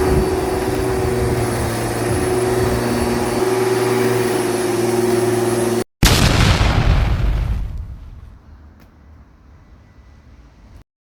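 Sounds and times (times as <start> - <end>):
lawn mower engine running: 0.0 - 5.8.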